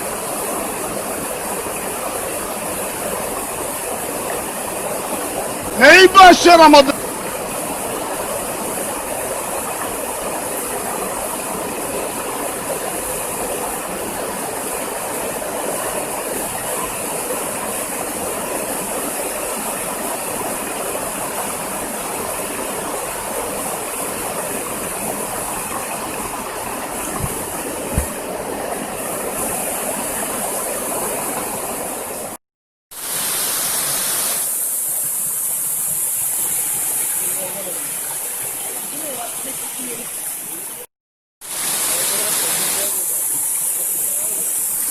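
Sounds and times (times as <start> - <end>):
waterfall rushing: 4.8 - 7.2.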